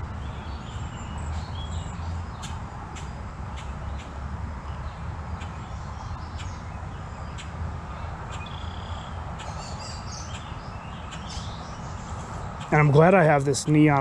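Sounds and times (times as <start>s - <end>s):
birds chirping: 0.0s - 14.0s
low outdoor rumble: 0.0s - 14.0s.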